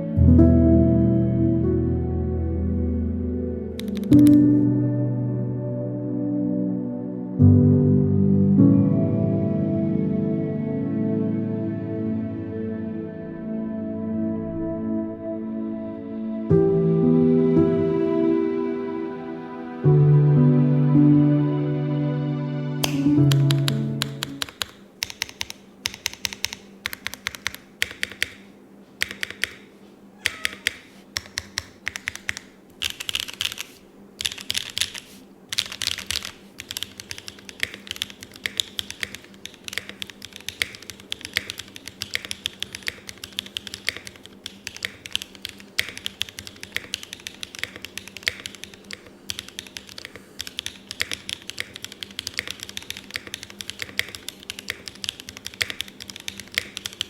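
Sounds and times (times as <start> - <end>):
mechanical keyboard typing: 3.8 - 4.6, 22.8 - 28.4, 29.0 - 57.0.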